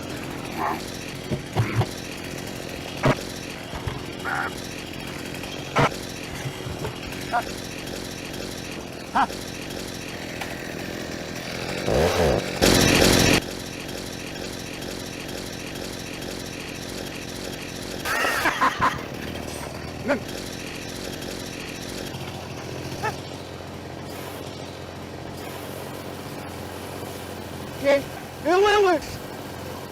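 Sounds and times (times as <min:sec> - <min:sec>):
loud noisy burst: 0:00.0 - 0:14.4
motor running steadily: 0:00.0 - 0:29.9.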